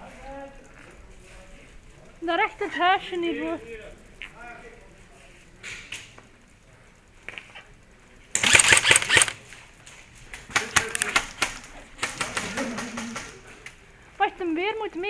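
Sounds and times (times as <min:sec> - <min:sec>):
airsoft guns firing bursts: 0:08.4 - 0:09.4.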